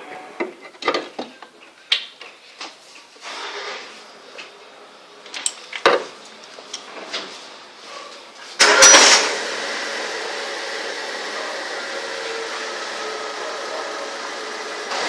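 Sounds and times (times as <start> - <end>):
car engine starting and running: 8.6 - 15.0.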